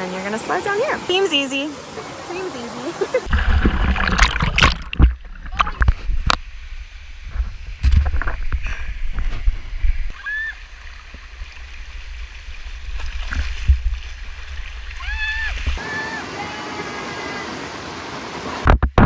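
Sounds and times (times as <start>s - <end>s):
water splashing: 0.0s - 18.7s
wind rumble on microphone: 4.9s - 15.9s.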